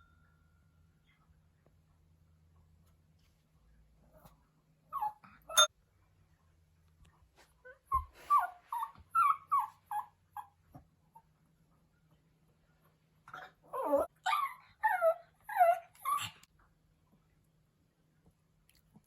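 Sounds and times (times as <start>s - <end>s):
puppy howling and whining: 4.9s - 5.7s, 7.8s - 10.6s, 13.3s - 16.5s.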